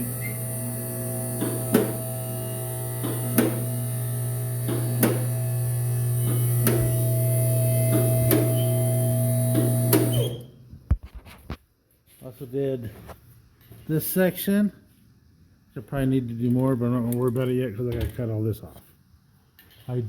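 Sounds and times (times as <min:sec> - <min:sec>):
sandblaster humming: 0:00.0 - 0:10.2.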